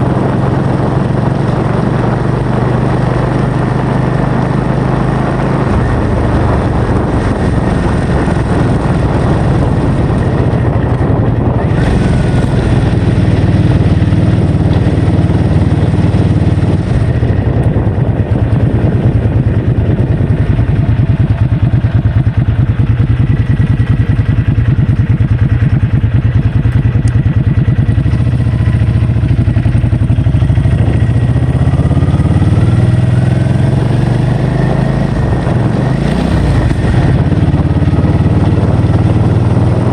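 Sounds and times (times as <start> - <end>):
vehicle engine running: 0.0 - 39.9
wind rumble on microphone: 0.0 - 39.9.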